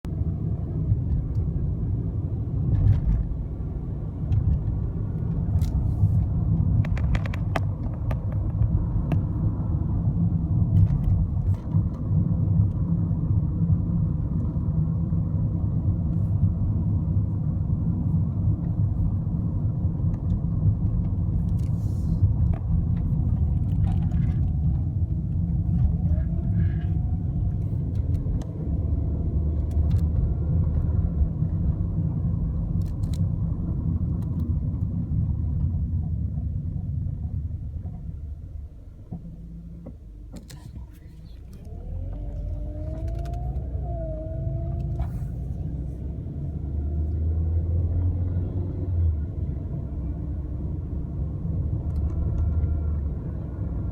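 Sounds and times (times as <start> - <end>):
car road and engine rumble: 0.0 - 53.9.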